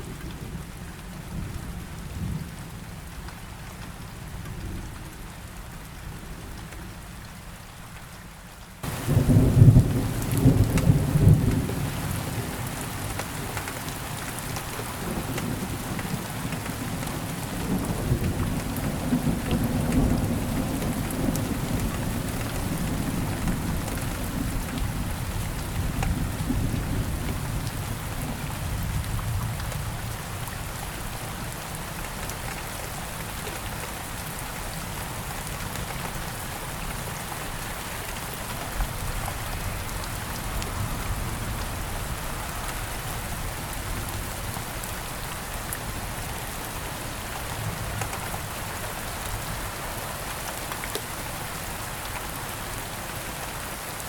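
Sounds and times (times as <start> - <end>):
rain falling: 0.0 - 54.0
raindrops ticking: 8.8 - 27.8
low rumble of thunder: 8.8 - 31.6.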